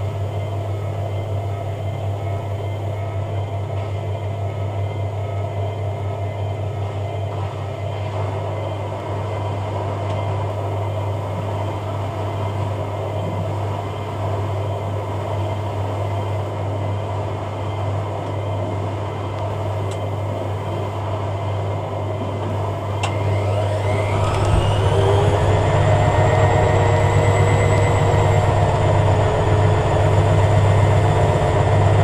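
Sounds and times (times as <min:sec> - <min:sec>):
rising spin whine: 0:00.0 - 0:03.0, 0:10.5 - 0:16.5, 0:19.5 - 0:21.0, 0:22.5 - 0:32.0
washing machine spinning: 0:00.0 - 0:03.1, 0:10.5 - 0:16.5, 0:19.5 - 0:21.0, 0:22.5 - 0:32.0
click: 0:19.4 - 0:21.0, 0:22.5 - 0:25.6, 0:26.4 - 0:28.7, 0:29.8 - 0:31.6.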